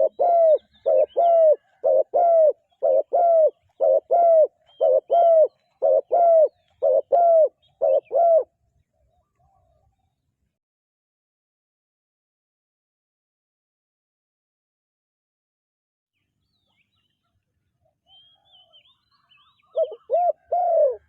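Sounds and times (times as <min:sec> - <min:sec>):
dove cooing: 0:00.0 - 0:08.6, 0:19.4 - 0:21.0.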